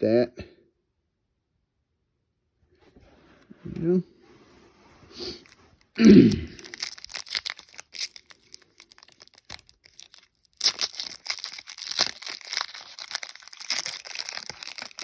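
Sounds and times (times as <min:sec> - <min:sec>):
trading cards rustling and crinkling: 0:05.1 - 0:15.0.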